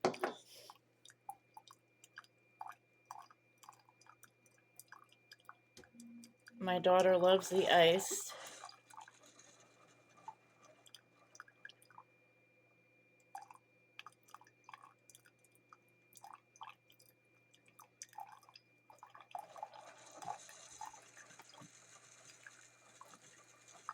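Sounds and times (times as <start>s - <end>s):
faint irregular drips: 0.0s - 23.9s
low steady hum: 2.1s - 14.0s.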